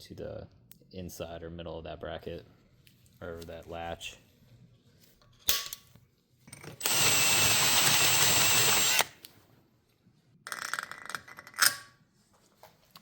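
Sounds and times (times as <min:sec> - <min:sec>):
power drill running with whine: 0:06.8 - 0:09.2.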